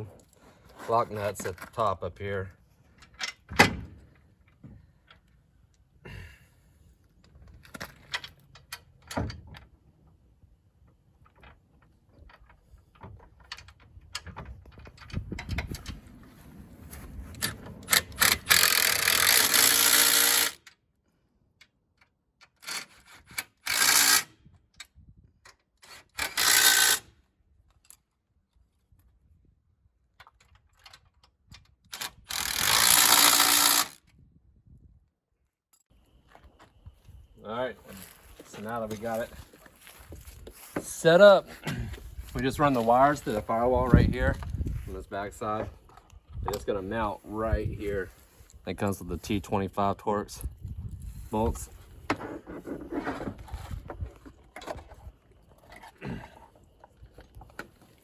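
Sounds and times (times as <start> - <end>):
metal parts and tools clicking: 17.4 - 20.8
cordless power tool bursts: 17.9 - 20.6, 23.4 - 24.3, 26.0 - 27.1, 32.0 - 34.0.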